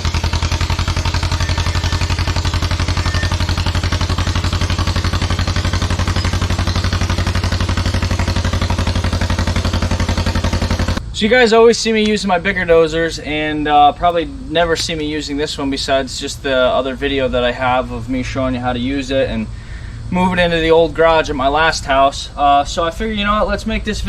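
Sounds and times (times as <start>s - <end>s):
dozer engine running steadily: 0.0s - 11.4s.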